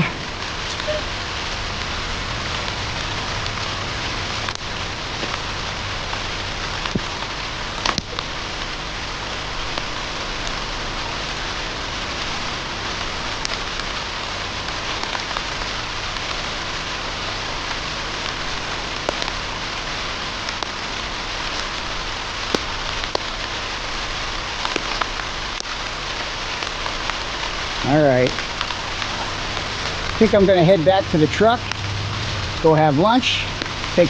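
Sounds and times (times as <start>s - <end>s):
raindrops ticking close: 0.0s - 34.0s
steady rain falling: 0.0s - 34.0s.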